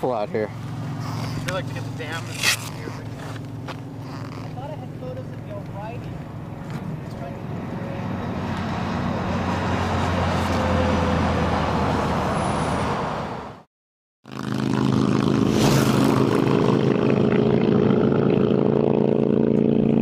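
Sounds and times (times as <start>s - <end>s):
wind and road noise: 0.0s - 13.7s, 14.3s - 20.0s
motorcycle engine running: 0.1s - 8.0s, 14.3s - 20.0s.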